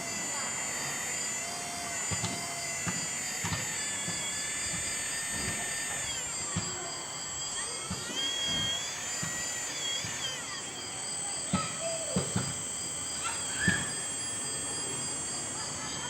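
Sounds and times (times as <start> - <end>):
small motors whining: 0.0 - 16.0.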